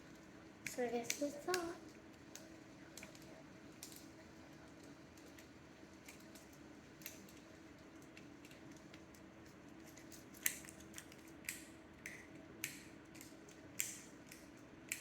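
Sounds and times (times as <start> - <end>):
fidget cube plastic clicks: 0.6 - 1.7.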